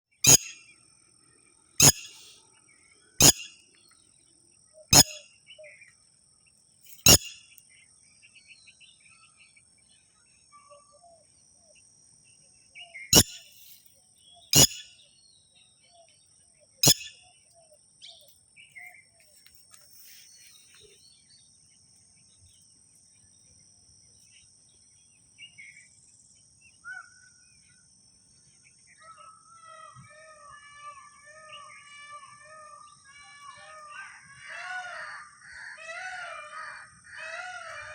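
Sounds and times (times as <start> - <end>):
high-pitched drone: 0.2 - 0.6, 1.8 - 2.4, 3.2 - 3.5, 5.0 - 5.2, 13.2 - 13.5, 14.6 - 14.9, 16.8 - 17.2
faint bird chirps: 0.2 - 0.8, 1.8 - 3.7, 4.7 - 5.9, 6.9 - 7.6, 12.8 - 19.4.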